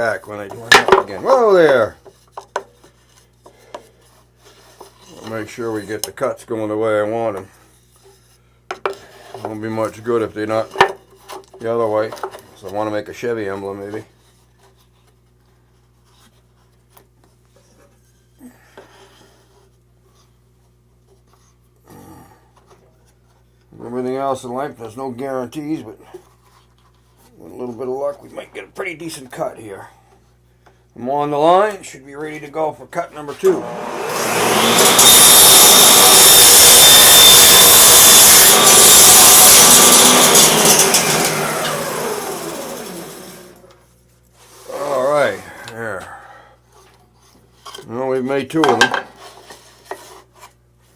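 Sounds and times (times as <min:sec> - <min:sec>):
saw blade winding down: 0:33.4 - 0:43.7
table saw cutting wood: 0:33.4 - 0:43.8
wood pieces scraping: 0:33.6 - 0:43.7.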